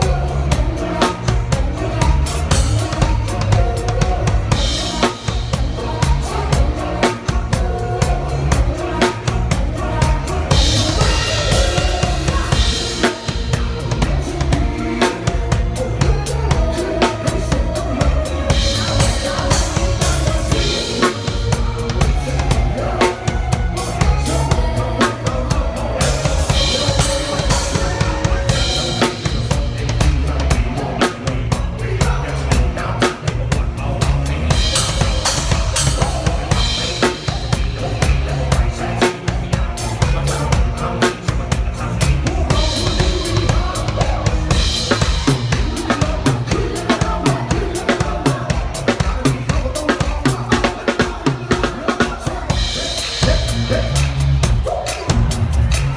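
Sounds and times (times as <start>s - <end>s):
drum kit playing: 0.0s - 55.9s
pop song backing track: 0.0s - 55.9s.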